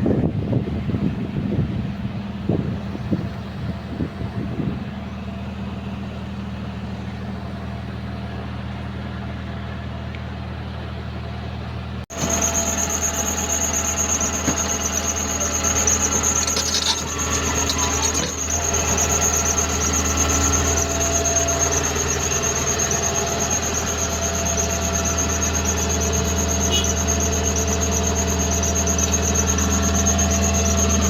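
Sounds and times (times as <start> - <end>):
diesel engine idling: 0.0 - 31.0
high-pitched whine: 12.1 - 31.0.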